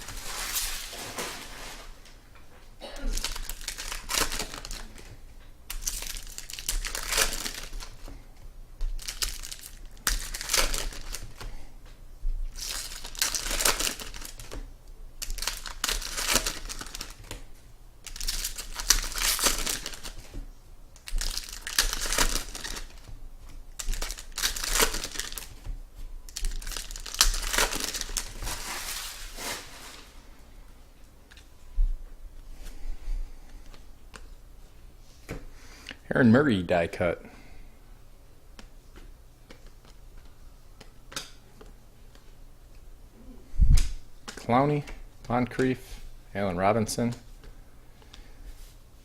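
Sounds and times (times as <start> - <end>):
wrappers tearing and crinkling: 0.0 - 2.1, 3.1 - 5.1, 5.7 - 8.1, 9.0 - 11.6, 12.5 - 14.6, 15.2 - 17.4, 18.0 - 20.3, 21.0 - 23.1, 23.7 - 25.7, 26.3 - 30.3.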